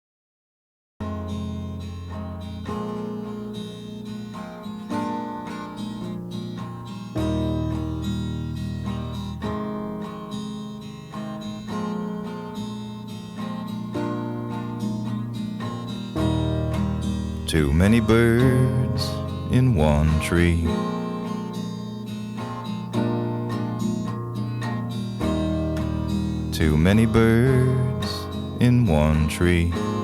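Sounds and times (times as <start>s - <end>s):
acoustic guitar strumming chords: 1.0s - 30.0s.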